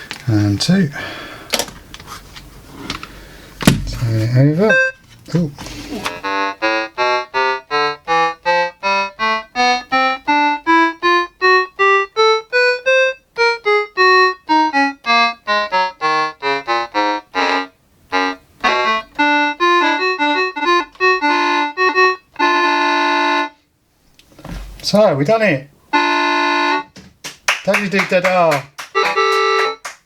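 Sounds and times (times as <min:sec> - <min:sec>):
mini keyboard playing notes: 0:04.4 - 0:23.7, 0:25.9 - 0:27.0, 0:28.2 - 0:30.0.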